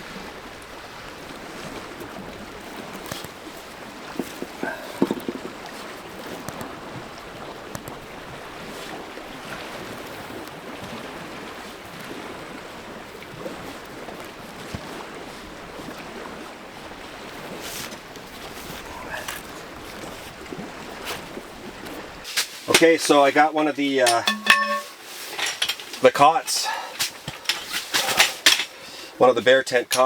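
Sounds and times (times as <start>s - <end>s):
waves washing against shore: 0.0s - 30.0s
faint knocks: 4.2s - 5.6s.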